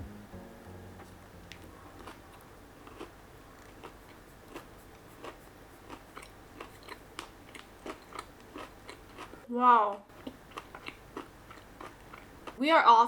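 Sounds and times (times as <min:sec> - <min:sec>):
crunchy chewing: 0:01.5 - 0:09.4, 0:10.1 - 0:12.6.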